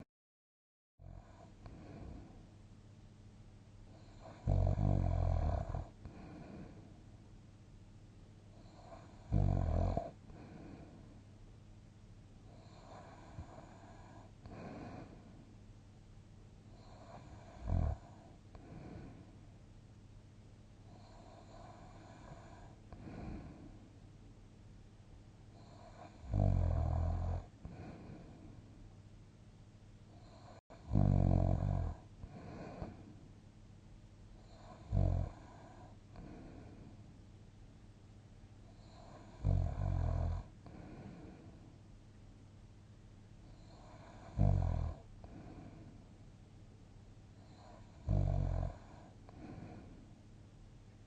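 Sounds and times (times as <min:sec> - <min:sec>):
person breathing slowly in sleep: 0:01.1 - 0:02.5, 0:03.9 - 0:07.1, 0:08.5 - 0:11.3, 0:12.4 - 0:15.6, 0:16.7 - 0:19.5, 0:20.9 - 0:24.0, 0:25.5 - 0:28.8, 0:30.1 - 0:33.3, 0:34.4 - 0:37.1, 0:38.6 - 0:41.8, 0:43.4 - 0:46.2, 0:47.3 - 0:50.2
loud pitched snore: 0:04.0 - 0:06.7, 0:08.6 - 0:10.6, 0:16.8 - 0:18.2, 0:25.6 - 0:27.9, 0:30.3 - 0:32.9, 0:34.5 - 0:35.8, 0:38.8 - 0:40.5, 0:43.6 - 0:45.0, 0:47.5 - 0:49.8.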